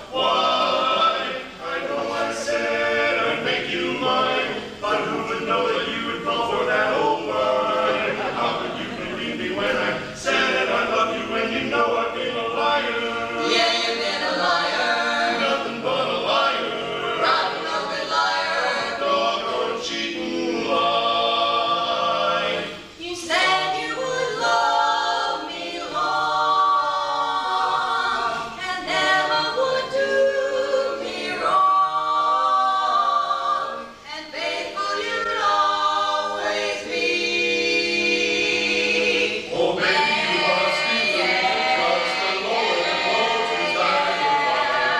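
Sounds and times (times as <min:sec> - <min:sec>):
a cappella close-harmony singing: 0:00.0 - 0:44.9.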